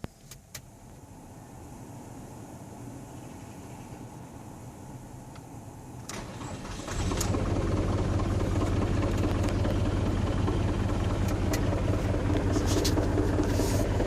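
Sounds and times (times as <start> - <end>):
diesel engine starting and running: 0.2 - 14.0.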